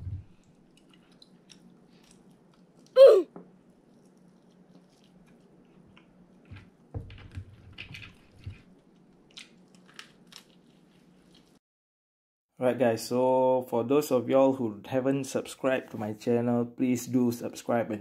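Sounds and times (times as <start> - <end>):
person chewing crunchy food: 0.3 - 3.0, 3.6 - 6.6.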